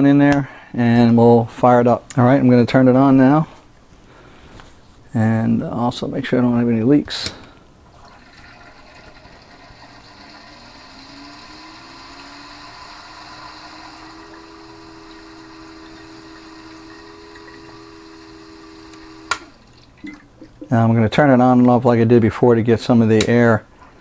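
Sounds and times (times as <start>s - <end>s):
coolant rushing: 7.9s - 20.9s
pump whine: 8.0s - 20.7s.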